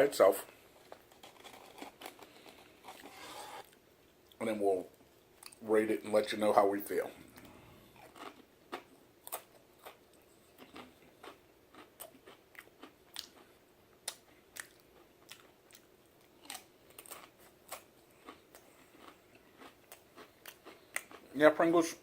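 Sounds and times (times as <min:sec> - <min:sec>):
person chewing crisps: 0:00.8 - 0:04.4, 0:07.2 - 0:21.4.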